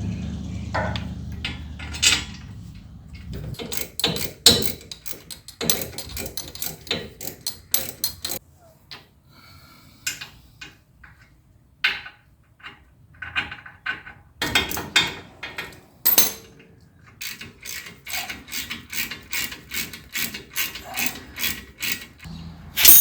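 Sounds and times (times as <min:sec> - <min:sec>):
ratchet wrench clicking: 0:03.5 - 0:08.4, 0:17.2 - 0:23.0.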